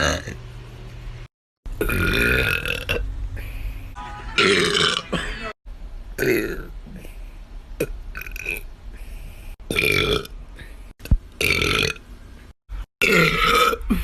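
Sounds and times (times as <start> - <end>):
woman belching loudly: 4.4 - 5.0, 13.0 - 14.0.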